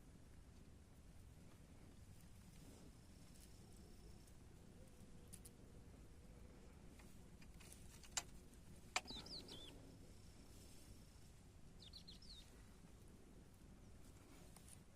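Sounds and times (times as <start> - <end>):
sharp clicks: 7.4 - 9.3
small bird chirping: 8.8 - 9.9, 11.7 - 12.8.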